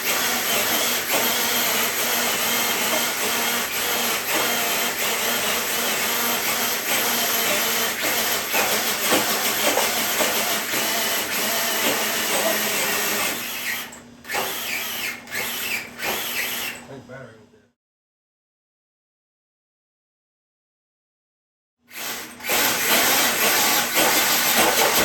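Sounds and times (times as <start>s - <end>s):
electric toy truck motor whining: 0.0s - 16.8s.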